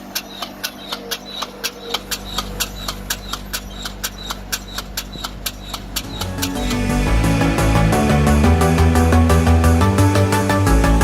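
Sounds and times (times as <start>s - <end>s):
rapid mechanical clicking: 0.0s - 7.8s
engine hum: 0.0s - 11.0s.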